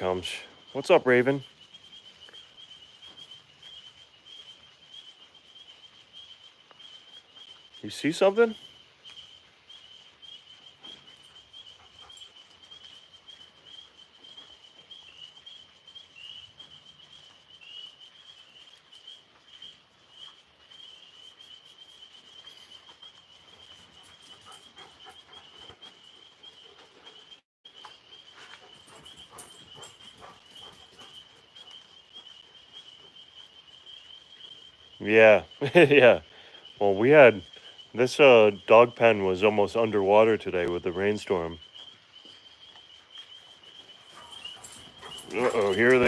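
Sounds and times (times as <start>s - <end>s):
night insects chirring: 0.0s - 26.8s, 27.7s - 46.0s
faint rustles and clicks: 43.9s - 46.0s.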